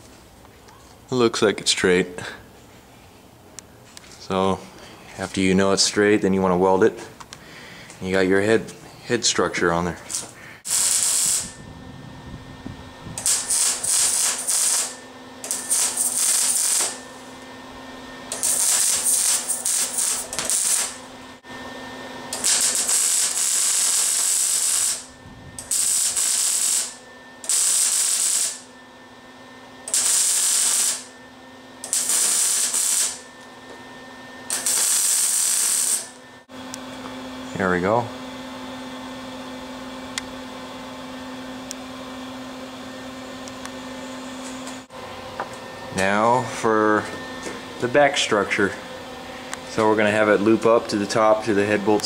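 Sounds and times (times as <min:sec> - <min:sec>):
low electrical hum: 0:00.0 - 0:52.0
arc welder crackling: 0:09.8 - 0:11.6, 0:13.1 - 0:17.6, 0:18.2 - 0:21.5, 0:22.2 - 0:28.8, 0:29.8 - 0:31.2, 0:31.8 - 0:33.6, 0:34.4 - 0:37.1.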